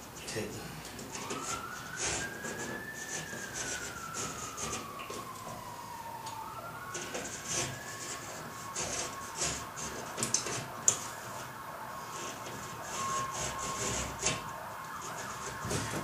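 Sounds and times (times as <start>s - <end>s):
siren wailing: 0.9s - 16.0s
utility knife scratching drywall: 7.0s - 11.1s, 12.1s - 16.0s.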